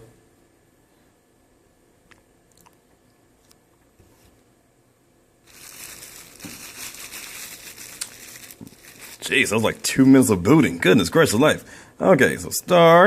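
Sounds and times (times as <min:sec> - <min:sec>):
crackling crunching rustle: 0:05.4 - 0:10.0.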